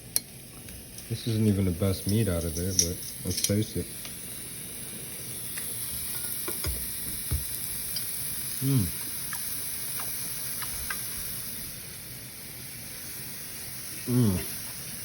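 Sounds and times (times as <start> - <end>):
meat sizzling on a hot plate: 0.0 - 15.0
person humming mm: 8.6 - 9.1, 14.0 - 14.6.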